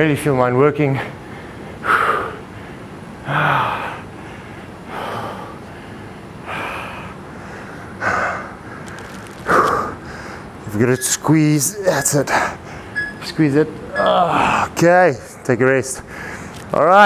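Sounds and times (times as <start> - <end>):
man grunting: 3.3 - 4.0, 14.0 - 14.8.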